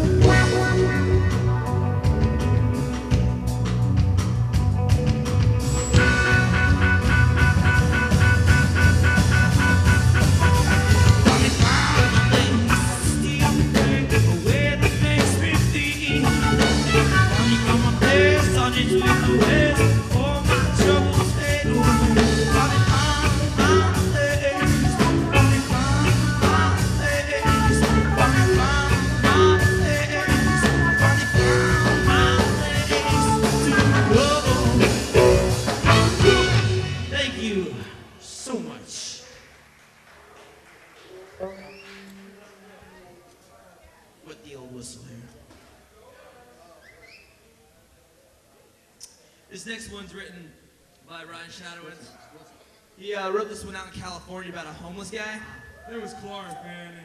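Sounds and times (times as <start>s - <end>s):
live rock band instrumental: 0.0s - 37.5s.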